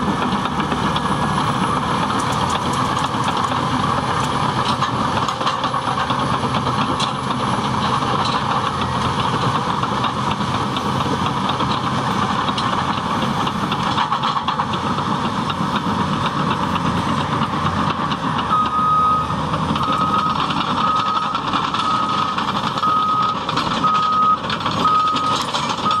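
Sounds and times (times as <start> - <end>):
bulldozer diesel engine running: 0.0 - 26.0
reversing alarm beeping: 18.5 - 26.0.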